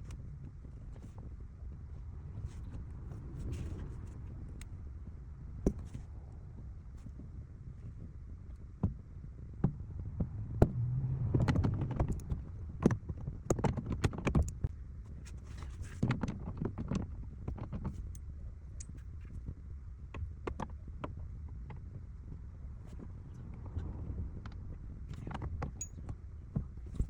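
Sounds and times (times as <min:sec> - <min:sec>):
steady low rumble: 0:00.0 - 0:13.5, 0:20.9 - 0:27.0.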